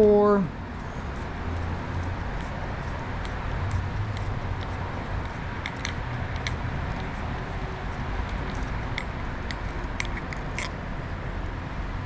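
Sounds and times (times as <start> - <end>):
low background rumble: 0.0 - 12.0
hand tool clicking on bolts: 1.2 - 10.7.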